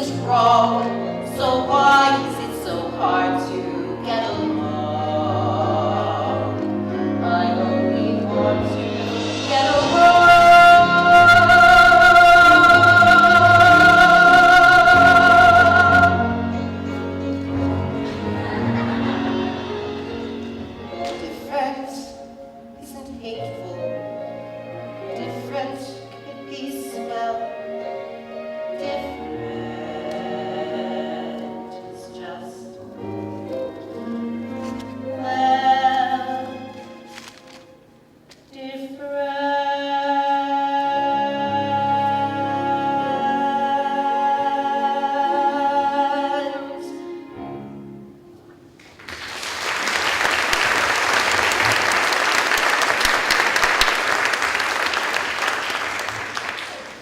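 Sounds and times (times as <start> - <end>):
orchestral music with held chords: 0.0 - 48.8
wordless choir voices: 1.4 - 16.9, 28.7 - 32.8
audience applause: 48.8 - 57.0.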